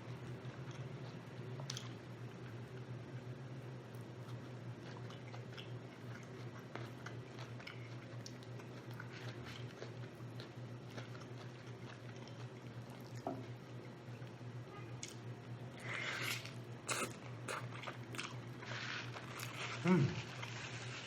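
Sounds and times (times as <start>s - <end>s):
steady low hum: 0.0s - 21.0s
person chewing: 4.2s - 13.7s, 15.0s - 20.7s
wet mouth clicks: 16.9s - 17.7s.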